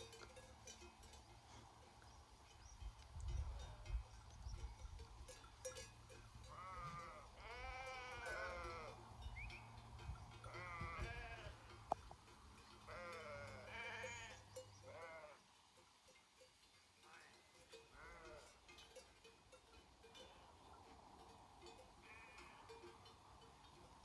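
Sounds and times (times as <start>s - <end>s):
sheep bleating: 6.5s - 9.0s, 10.4s - 11.7s, 12.9s - 15.4s, 18.0s - 18.6s.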